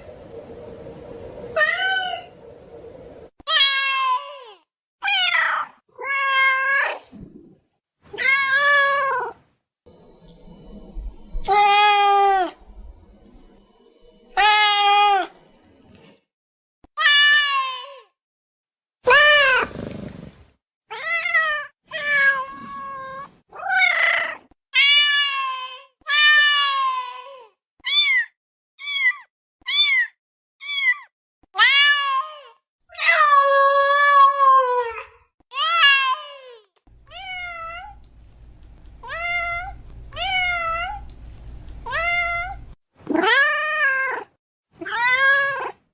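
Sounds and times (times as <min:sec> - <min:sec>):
cat meowing: 0:37.0 - 0:38.0, 0:41.8 - 0:42.7.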